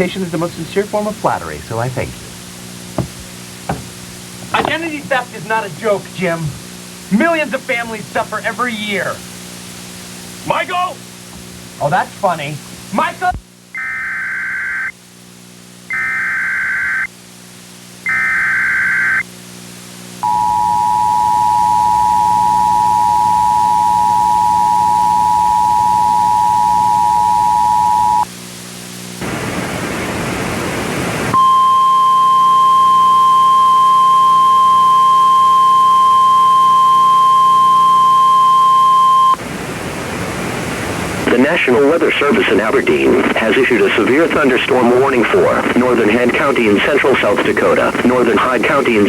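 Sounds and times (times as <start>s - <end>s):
steady warning alarm tone: 20.2s - 28.3s, 31.4s - 39.4s
two-tone attention signal: 20.2s - 28.3s, 31.4s - 39.4s.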